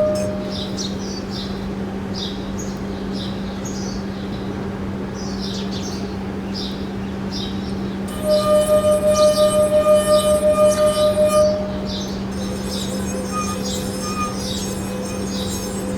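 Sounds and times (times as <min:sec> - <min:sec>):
steady low hum: 0:00.0 - 0:02.1, 0:06.2 - 0:15.9.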